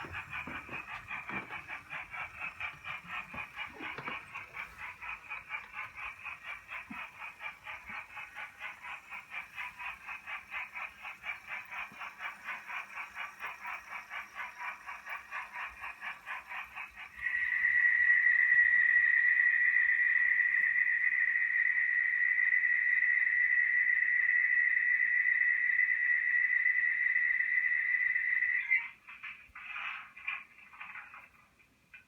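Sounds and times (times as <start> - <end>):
steam exhaust chuffs from loudspeaker: 0.0 - 21.3.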